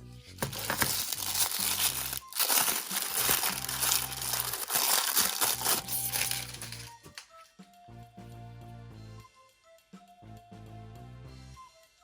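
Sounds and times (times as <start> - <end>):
plastic packaging crinkling: 0.4 - 7.2.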